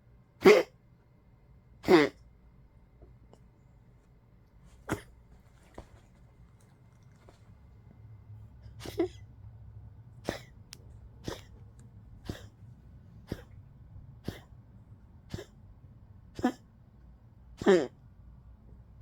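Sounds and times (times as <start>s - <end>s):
dog coughing: 0.4s - 0.8s, 1.8s - 2.2s, 4.7s - 5.9s, 8.7s - 9.3s, 10.2s - 10.6s, 11.2s - 11.6s, 12.2s - 12.6s, 13.2s - 13.6s, 14.2s - 14.6s, 15.2s - 15.6s, 16.3s - 16.7s, 17.5s - 18.0s.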